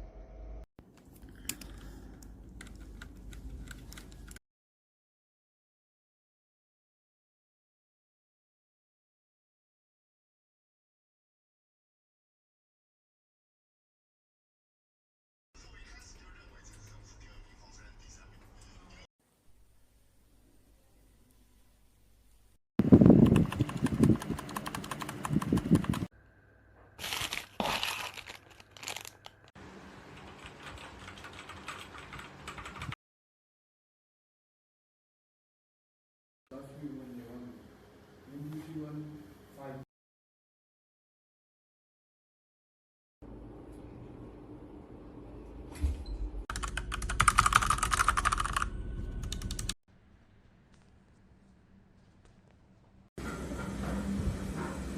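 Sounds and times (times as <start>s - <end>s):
mechanical keyboard clicking: 23.1s - 26.1s, 30.4s - 32.9s, 46.5s - 49.7s.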